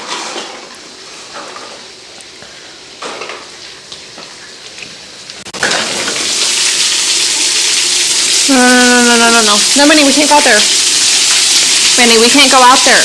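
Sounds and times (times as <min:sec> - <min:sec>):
heavy rain pouring: 0:06.3 - 0:13.0.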